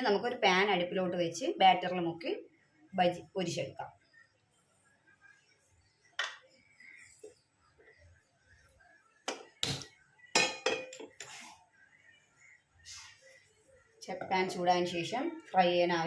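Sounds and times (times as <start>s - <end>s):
pan and utensils clinking: 10.4s - 11.1s.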